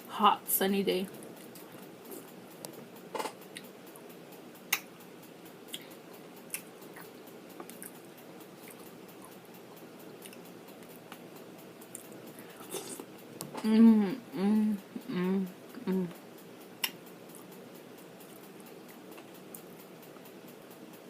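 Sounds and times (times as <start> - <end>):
quiet chewing: 1.1 - 4.1, 5.7 - 11.2, 11.8 - 13.1, 16.8 - 17.6, 18.2 - 20.3.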